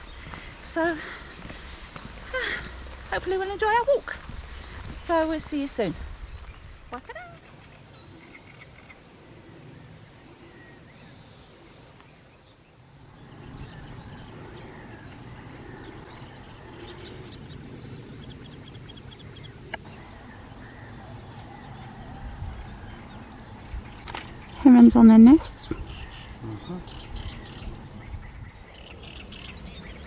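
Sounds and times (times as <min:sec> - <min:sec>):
small birds chirping: 0:00.0 - 0:30.0
low steady rumble: 0:12.6 - 0:30.0.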